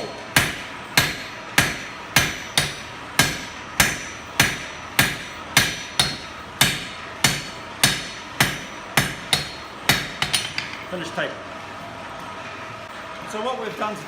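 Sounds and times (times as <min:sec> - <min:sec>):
hammer striking steel on anvil: 0:00.0 - 0:10.9.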